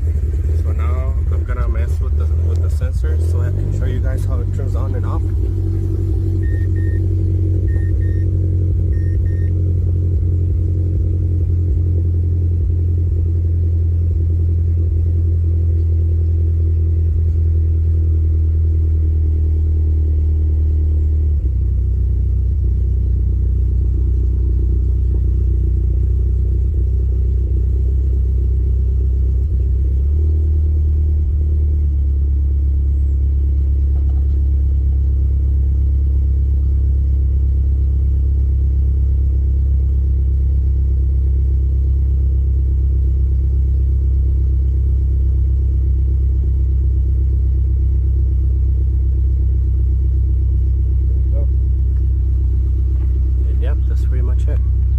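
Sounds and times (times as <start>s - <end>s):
car engine idling: 0.0s - 54.9s
short high beeps: 6.4s - 7.0s.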